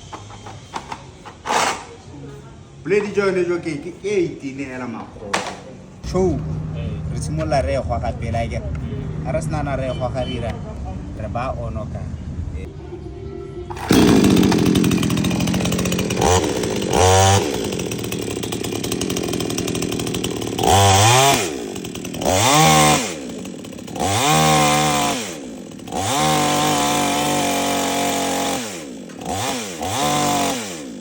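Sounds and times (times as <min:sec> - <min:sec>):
chainsaw revving: 0:01.5 - 0:01.9, 0:13.7 - 0:31.0.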